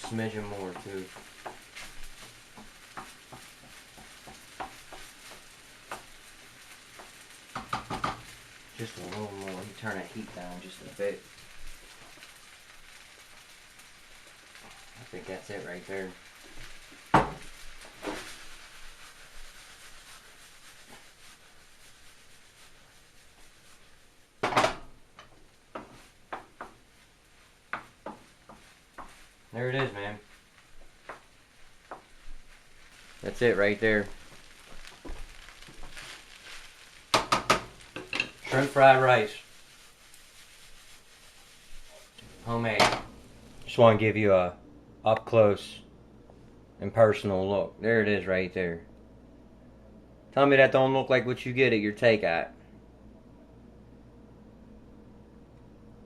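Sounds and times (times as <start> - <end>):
spatula scraping a pan: 0.0 - 10.4, 16.3 - 24.1, 34.1 - 43.0
fried rice sizzling in a pan: 0.0 - 44.2
utensil scraping a pan: 31.0 - 43.1.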